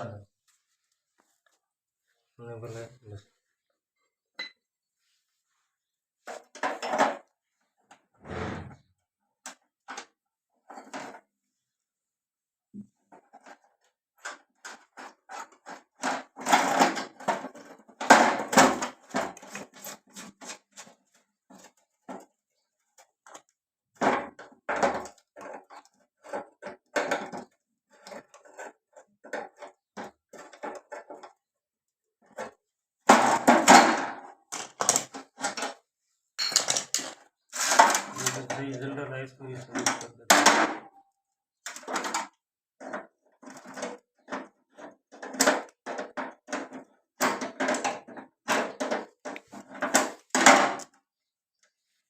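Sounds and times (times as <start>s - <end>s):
metal stove parts clattering: 36.4s - 37.2s.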